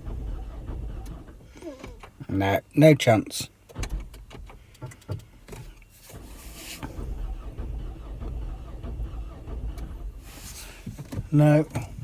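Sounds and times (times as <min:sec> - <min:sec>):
car engine cranking: 0:00.0 - 0:02.6, 0:03.2 - 0:12.0.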